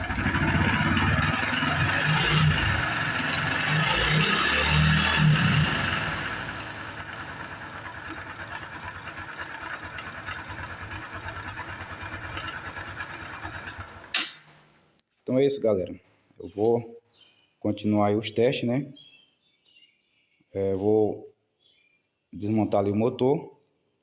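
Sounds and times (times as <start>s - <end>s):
loud mechanical engine noise: 0.0s - 14.2s
small motorcycle engine idling: 0.0s - 14.4s.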